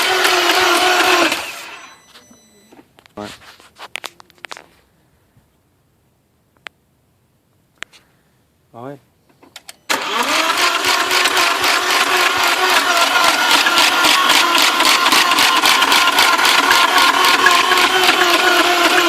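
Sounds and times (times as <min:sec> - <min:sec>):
starter motor cranking: 0:00.0 - 0:01.9, 0:09.6 - 0:19.0.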